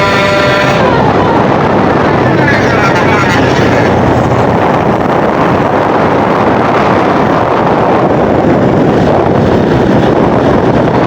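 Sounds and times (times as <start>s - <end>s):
bus engine and tyres passing: 0.0s - 11.0s
wind buffeting microphone: 0.0s - 11.0s.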